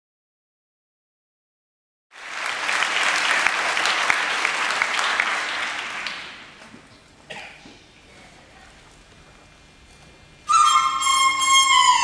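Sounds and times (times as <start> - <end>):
audience applause: 2.1 - 6.6.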